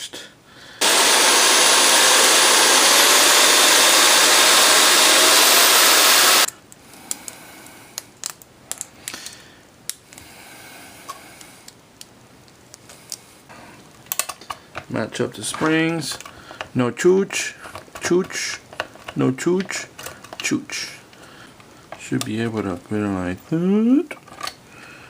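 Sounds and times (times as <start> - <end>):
power drill drilling: 0.8 - 6.5
parts clicking and tapping: 14.0 - 14.9.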